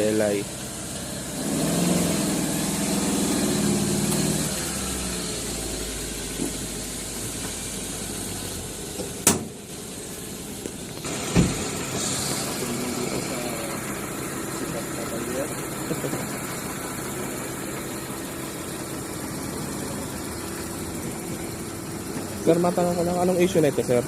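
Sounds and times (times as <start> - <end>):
car engine running: 0.0 - 24.0
dull thump: 9.0 - 9.6, 11.3 - 11.8
sharp knock: 9.2 - 9.6, 11.3 - 11.7.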